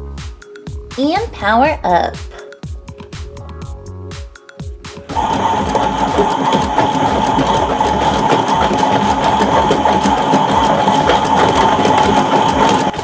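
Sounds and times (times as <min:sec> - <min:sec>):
drum rattling: 0:05.0 - 0:13.0.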